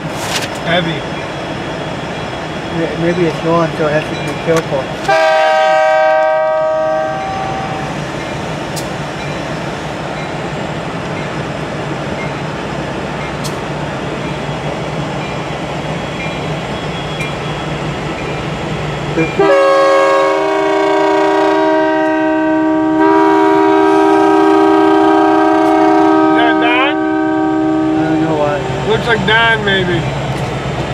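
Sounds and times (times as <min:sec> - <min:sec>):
train rumbling past: 0:00.0 - 0:30.9
locomotive air horn: 0:05.0 - 0:07.9, 0:19.4 - 0:28.4.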